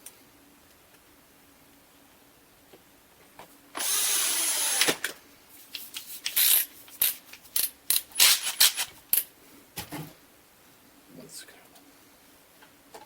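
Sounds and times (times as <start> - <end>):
small power tool whining: 3.8 - 5.2.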